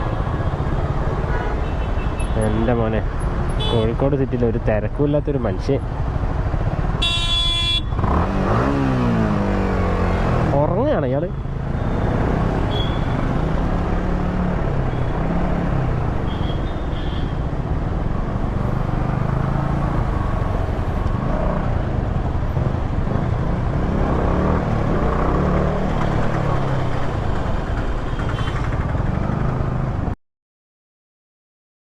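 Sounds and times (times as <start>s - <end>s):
road and wind noise: 0.0s - 30.2s
motorcycle engine revving: 7.9s - 10.6s.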